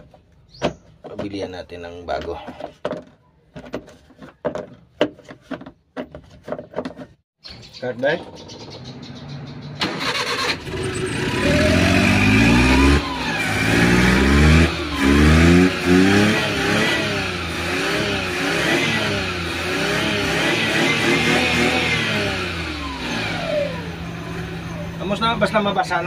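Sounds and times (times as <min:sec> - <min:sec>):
car engine starting and revving: 0:09.1 - 0:25.6.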